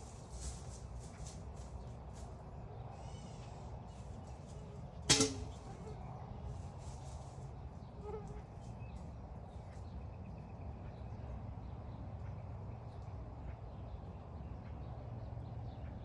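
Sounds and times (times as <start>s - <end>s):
faint bird chirps: 2.9s - 4.0s.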